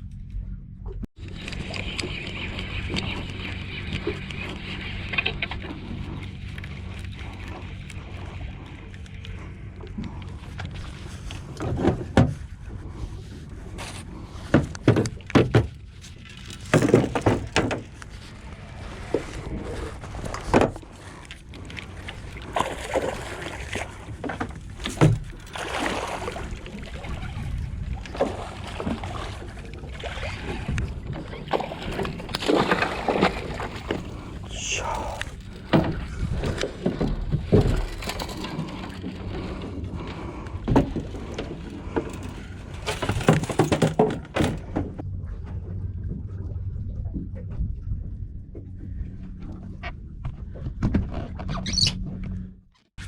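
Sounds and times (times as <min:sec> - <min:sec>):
low steady hum: 0:00.0 - 0:52.7
gear knocking and thumping: 0:14.6 - 0:18.0.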